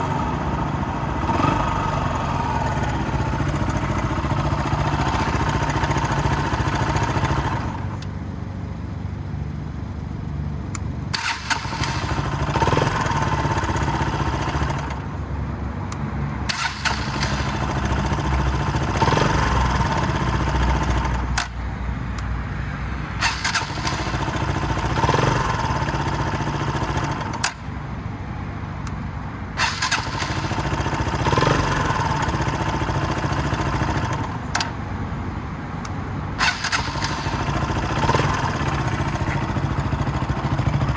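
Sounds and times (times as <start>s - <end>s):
motorcycle engine starting and stopping: 0.0s - 9.1s, 9.8s - 15.2s, 16.4s - 21.6s, 23.1s - 27.7s, 29.5s - 40.9s
sharp clicks: 27.0s - 27.6s.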